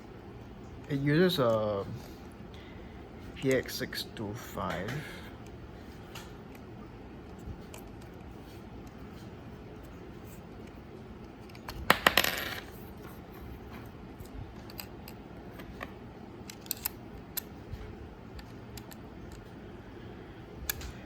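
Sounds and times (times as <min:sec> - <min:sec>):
small metallic clicks: 0:16.5 - 0:17.5.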